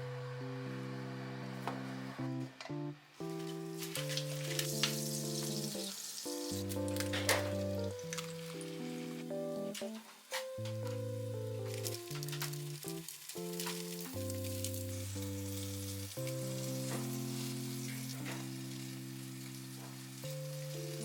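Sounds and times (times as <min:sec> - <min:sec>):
food sizzling in a frying pan: 0:03.7 - 0:21.0.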